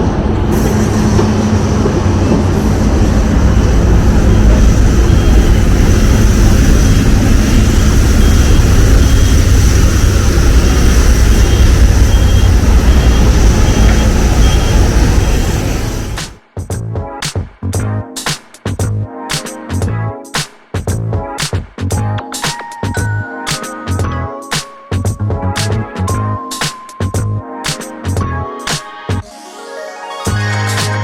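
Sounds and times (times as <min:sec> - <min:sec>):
airliner cabin engine rumble: 0:00.0 - 0:16.4.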